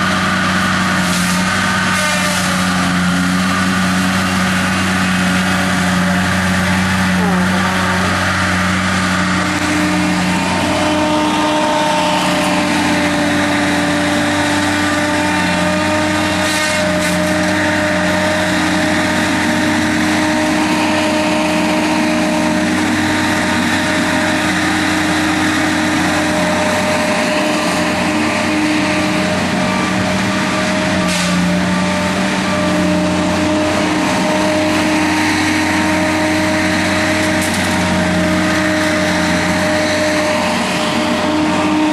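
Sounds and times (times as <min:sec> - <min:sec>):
engine running steadily: 0:00.0 - 0:41.9.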